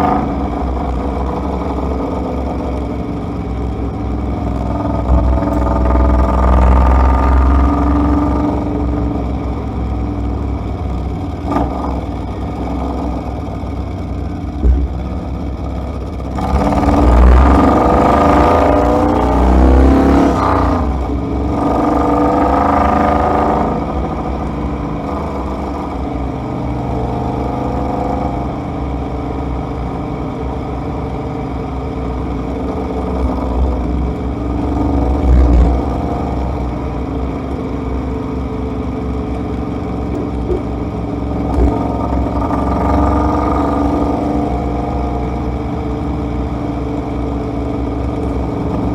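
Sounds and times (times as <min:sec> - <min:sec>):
car engine: 0:00.0 - 0:48.9
road rumble: 0:00.0 - 0:48.9.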